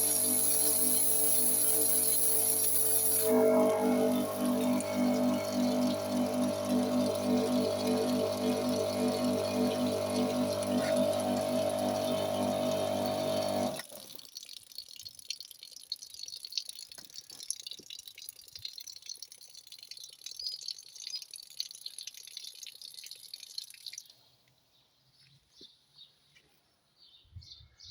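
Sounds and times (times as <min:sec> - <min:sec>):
pressure washer motor humming: 0:00.0 - 0:14.0
water hissing and dripping: 0:00.0 - 0:24.1.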